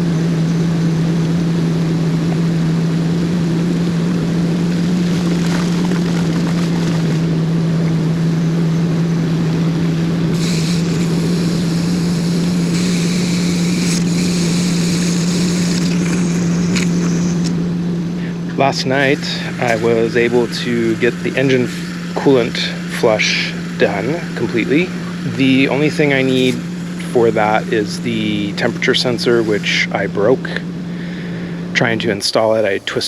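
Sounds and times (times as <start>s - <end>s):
van engine idling: 0.0s - 33.0s
high hiss: 10.3s - 17.5s, 18.5s - 29.9s.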